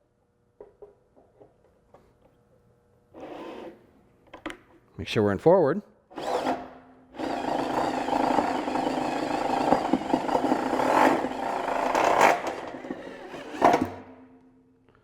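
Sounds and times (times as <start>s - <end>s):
electric drill running: 6.1s - 13.9s.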